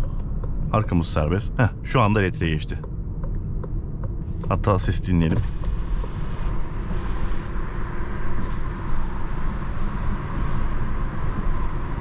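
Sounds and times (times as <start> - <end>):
faint high whine: 4.2 - 12.0.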